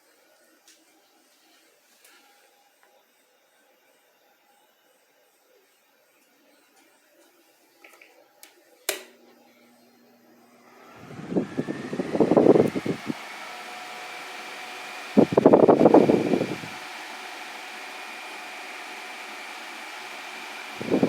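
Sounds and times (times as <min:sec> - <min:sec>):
switch click: 0:08.9 - 0:09.2
table fan whooshing: 0:10.6 - 0:17.6
wind buffeting microphone: 0:11.1 - 0:13.2.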